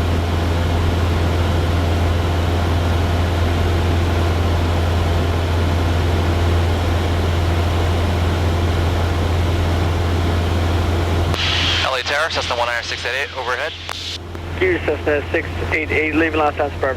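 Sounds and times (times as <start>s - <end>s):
propeller plane engine droning: 0.0s - 16.9s.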